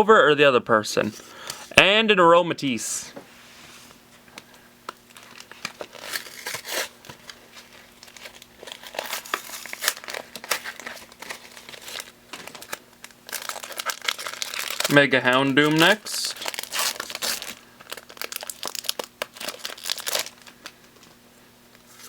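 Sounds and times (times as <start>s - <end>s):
foil wrapper crinkling: 4.4s - 21.2s.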